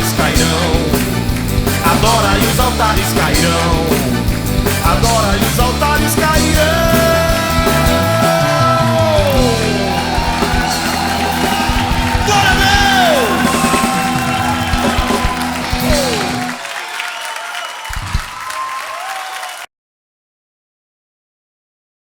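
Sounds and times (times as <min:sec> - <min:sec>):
rock band playing: 0:00.0 - 0:17.1
crowd noise: 0:00.0 - 0:19.7
wordless vocal cries: 0:05.9 - 0:16.7.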